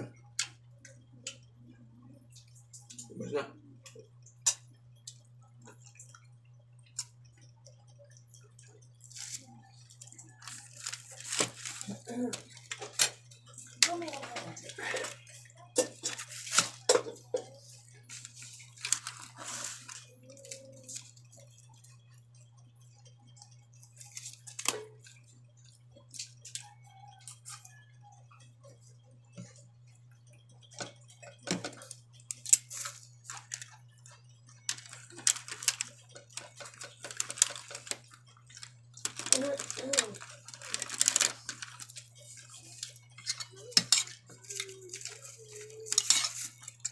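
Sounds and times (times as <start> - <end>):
chewing and crunching: 0.4 - 46.9.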